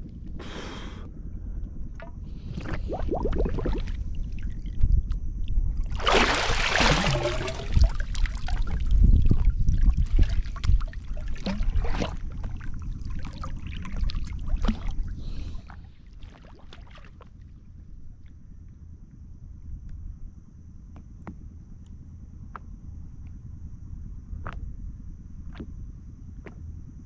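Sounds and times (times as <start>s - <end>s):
water splashing against boat: 5.8s - 17.4s.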